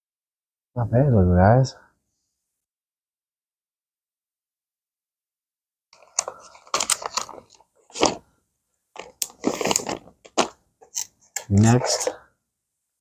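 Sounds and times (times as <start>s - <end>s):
plastic packaging crinkling: 6.0s - 8.2s, 9.0s - 12.1s.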